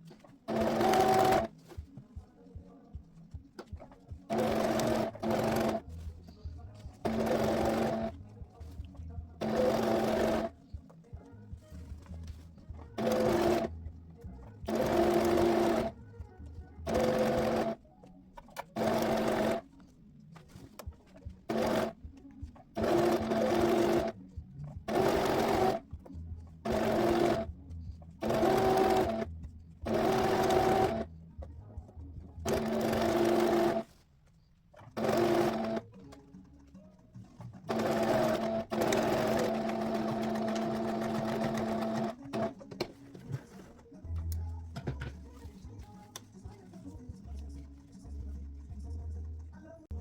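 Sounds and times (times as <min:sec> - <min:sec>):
sewing machine stitching: 0:00.5 - 0:01.5, 0:04.3 - 0:06.1, 0:07.0 - 0:08.2, 0:09.4 - 0:10.5, 0:13.0 - 0:13.7, 0:14.6 - 0:16.0, 0:16.8 - 0:17.8, 0:18.5 - 0:19.7, 0:21.5 - 0:22.0, 0:22.7 - 0:24.2, 0:24.9 - 0:25.9, 0:26.7 - 0:27.5, 0:28.2 - 0:29.3, 0:29.9 - 0:31.1, 0:32.4 - 0:33.9, 0:34.8 - 0:35.9, 0:37.6 - 0:43.7.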